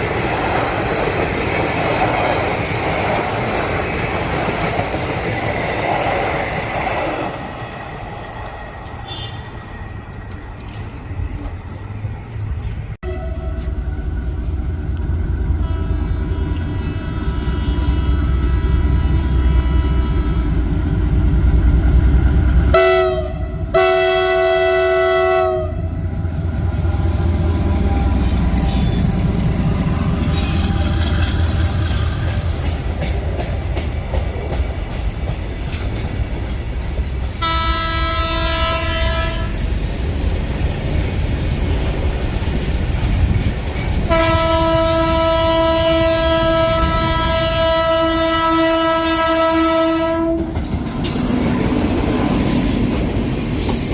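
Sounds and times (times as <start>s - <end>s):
train rumble and wheel clatter: 0.0s - 53.9s
locomotive horn blasts: 9.0s - 9.5s, 13.0s - 13.8s, 15.6s - 20.7s, 22.7s - 26.0s, 37.4s - 39.6s, 44.1s - 50.6s.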